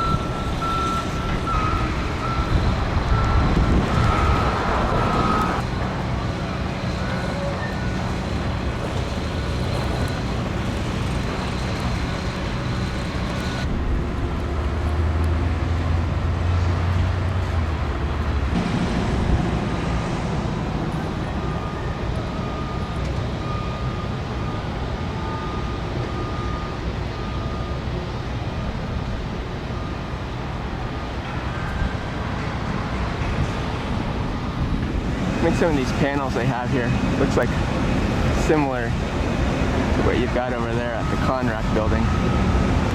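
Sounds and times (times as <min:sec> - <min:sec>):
heavy low rumble: 0:00.0 - 0:24.5
road traffic noise: 0:00.0 - 0:42.9.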